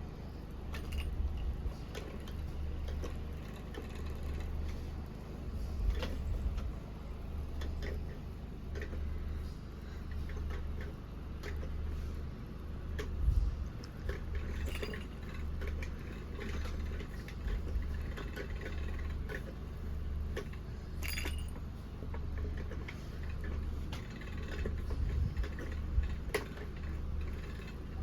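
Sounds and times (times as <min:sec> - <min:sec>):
steady low hum: 0:00.0 - 0:28.0
cat toy clicking and clinking: 0:21.0 - 0:21.6.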